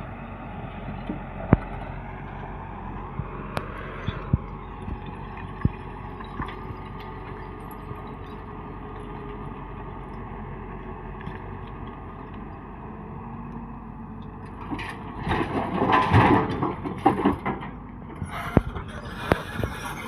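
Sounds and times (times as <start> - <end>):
heavy machinery running: 0.0 - 20.0
masonry crashing and crunching: 14.6 - 17.7.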